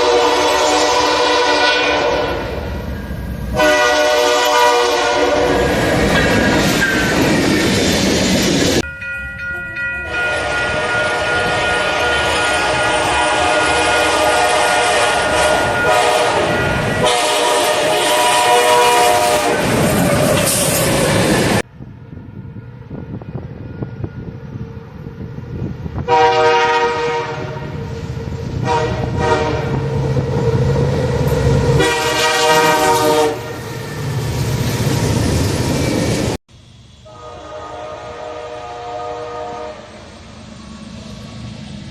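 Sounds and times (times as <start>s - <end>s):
pitched down train horn chord: 0.0s - 2.6s, 3.5s - 5.7s, 10.0s - 19.6s, 26.0s - 27.9s, 28.6s - 29.9s, 31.7s - 33.6s, 37.0s - 40.0s
train horn blasts: 0.0s - 2.6s, 3.5s - 5.8s, 10.0s - 20.3s, 26.0s - 27.9s, 28.6s - 30.0s, 31.7s - 33.8s, 37.0s - 40.1s
train rumble: 0.0s - 41.9s.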